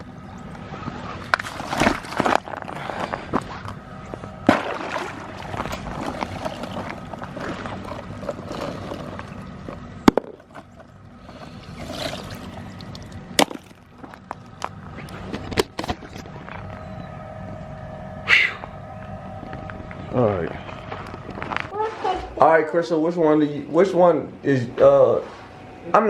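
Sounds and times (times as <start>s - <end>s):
ice crunching: 1.1s - 16.2s
rock knocking on ice: 13.4s - 13.8s.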